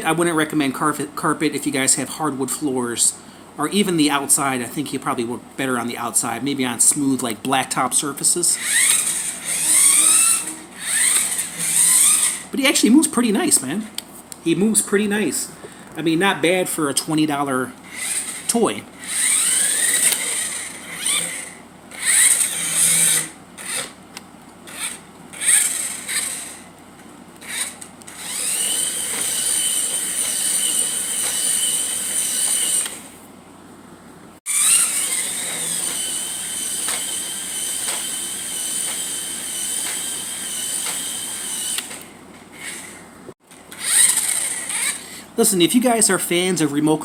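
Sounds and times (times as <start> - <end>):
toy car motor whirring: 8.6 - 12.5, 17.9 - 24.0, 24.7 - 26.7, 27.4 - 33.1, 34.5 - 43.0, 43.7 - 45.1.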